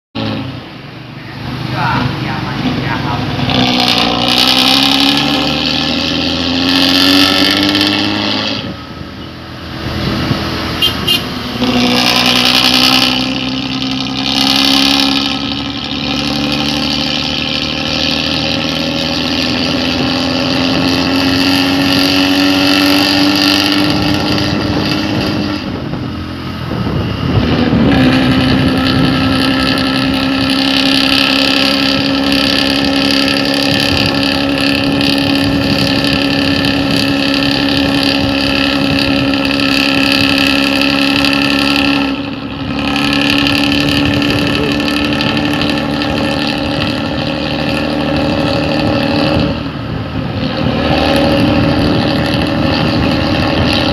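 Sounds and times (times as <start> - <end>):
diesel bus engine under load: 0.2 - 53.9.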